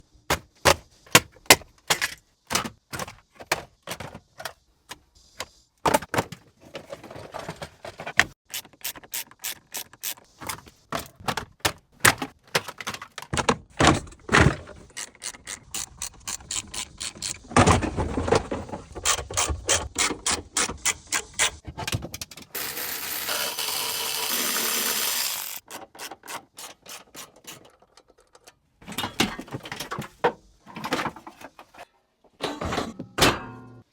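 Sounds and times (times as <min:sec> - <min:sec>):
sharp ratchet-like clicks: 0:08.5 - 0:10.3, 0:14.9 - 0:17.4, 0:19.0 - 0:21.6, 0:22.5 - 0:27.6.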